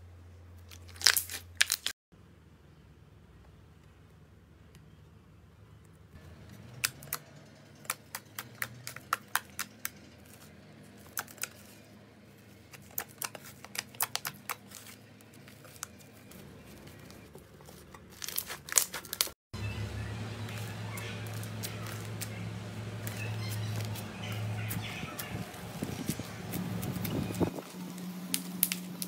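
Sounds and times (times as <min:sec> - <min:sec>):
slime popping and crackling: 0:12.7 - 0:14.9, 0:28.3 - 0:29.0.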